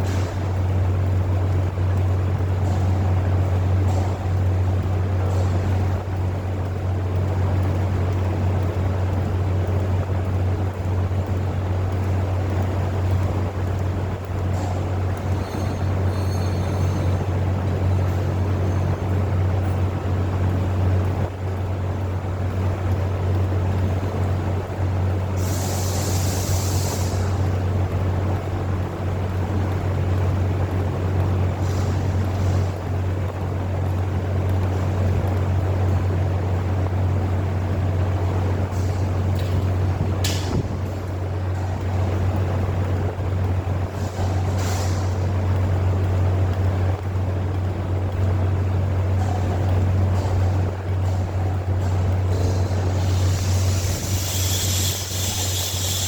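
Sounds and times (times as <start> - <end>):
low machine hum: 0.0 - 56.0
burst of high hiss: 52.4 - 56.0.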